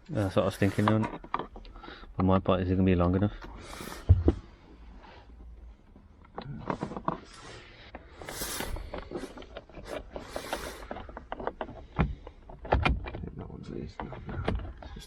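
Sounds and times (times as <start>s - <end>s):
hand tools clicking and scraping: 6.6s - 15.0s.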